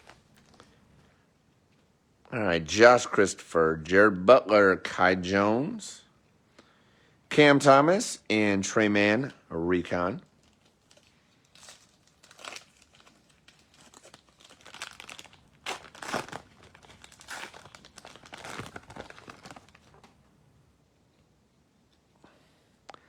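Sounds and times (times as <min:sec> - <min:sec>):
foil wrapper crinkling and tearing: 0:00.0 - 0:00.8, 0:10.3 - 0:20.2.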